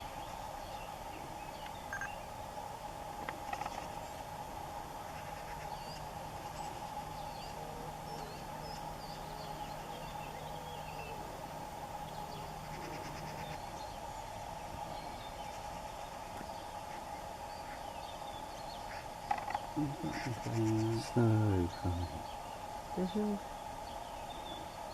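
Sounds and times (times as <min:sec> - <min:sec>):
faint bird chirps: 0:00.0 - 0:02.3
low steady drone: 0:00.0 - 0:24.9
steady even hum: 0:00.0 - 0:24.9.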